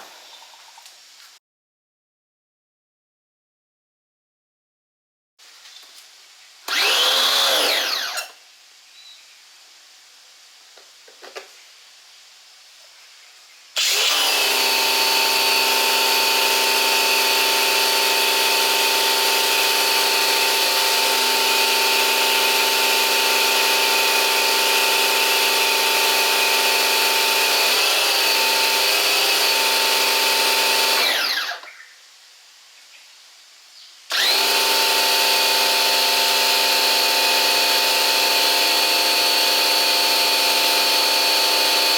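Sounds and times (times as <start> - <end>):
pressure washer motor whining: 6.7 - 8.4, 13.8 - 31.6, 34.1 - 41.9.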